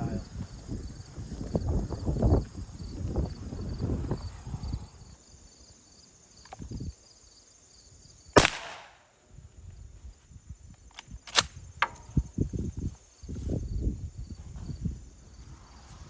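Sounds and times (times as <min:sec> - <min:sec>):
shotgun blast: 0:08.4 - 0:09.0
sharp clicks and knocks: 0:10.9 - 0:12.2.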